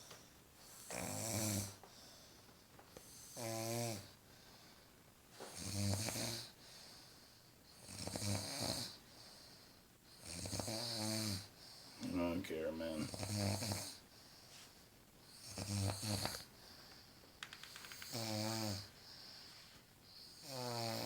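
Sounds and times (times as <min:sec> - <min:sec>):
woman snoring: 0:20.3 - 0:21.0.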